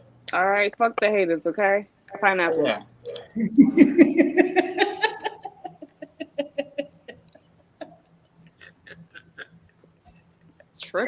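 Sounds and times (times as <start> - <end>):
person laughing: 3.4 - 8.0.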